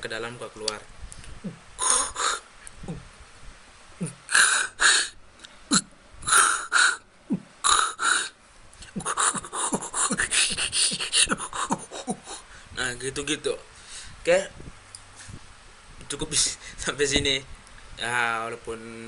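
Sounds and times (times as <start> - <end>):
hissing breath through mouth: 1.8 - 2.4, 4.3 - 5.2, 7.6 - 11.7
beatbox bass drops: 5.7 - 12.4.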